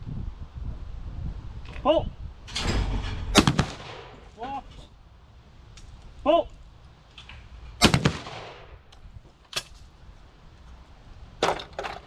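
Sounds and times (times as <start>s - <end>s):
shotgun shots with echo: 3.3s - 4.3s, 7.8s - 8.8s.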